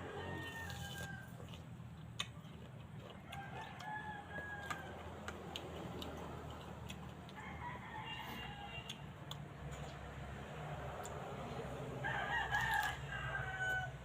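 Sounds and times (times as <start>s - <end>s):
roosters crowing: 0.0s - 1.6s, 3.2s - 9.2s, 11.8s - 14.0s.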